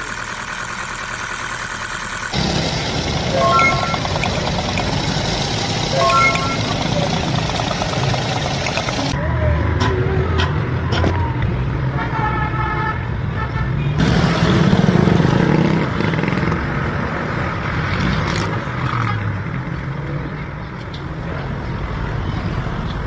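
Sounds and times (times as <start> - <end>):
car engine misfiring: 0.0 - 9.2.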